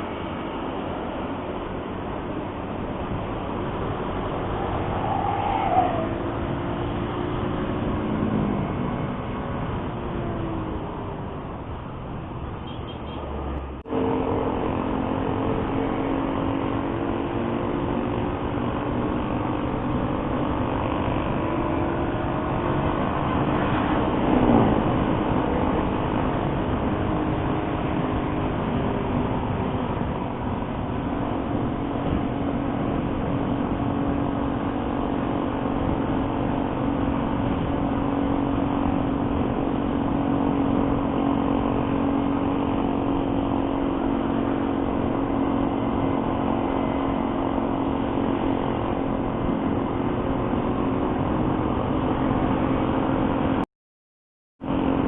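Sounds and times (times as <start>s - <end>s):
motorcycle engine cruising: 0.0s - 53.6s
passing vehicle: 0.0s - 53.7s, 54.6s - 55.0s.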